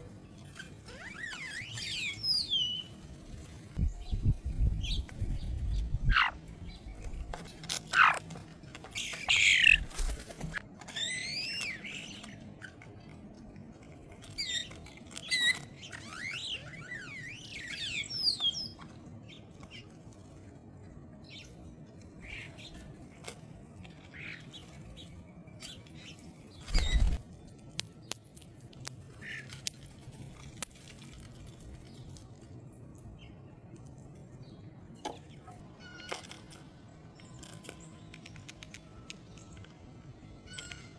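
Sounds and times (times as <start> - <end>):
birds squawking and chirping: 0.8 - 3.0, 6.0 - 6.4, 7.8 - 8.3, 8.9 - 12.2, 26.6 - 27.2.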